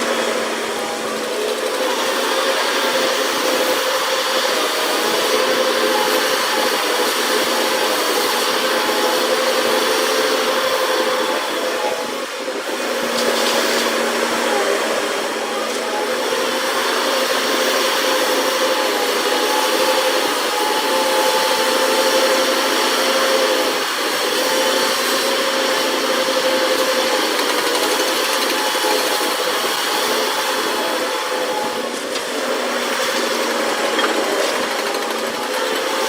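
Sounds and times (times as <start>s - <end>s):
machine running with whine: 0.0s - 36.0s.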